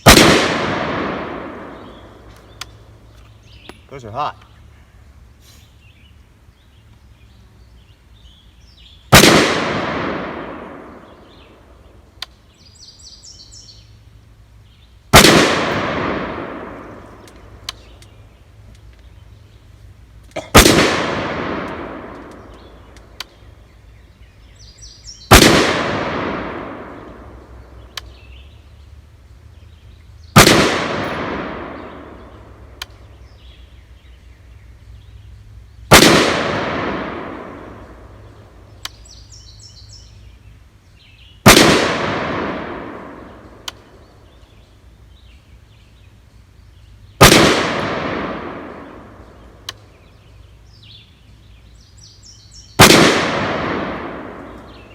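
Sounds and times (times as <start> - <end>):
gunshots with echoing tail: 0.0 - 2.3, 9.1 - 11.5, 15.1 - 17.2, 20.4 - 22.8, 25.3 - 27.4, 30.4 - 32.4, 35.9 - 38.0, 41.5 - 43.6, 47.2 - 49.5, 52.8 - 54.9.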